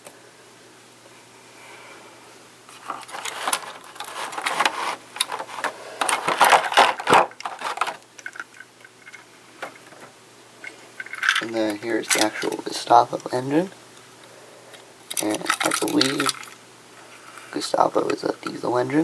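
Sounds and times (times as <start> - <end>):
packaging rustling and crackling: 2.7 - 12.9, 15.1 - 16.6.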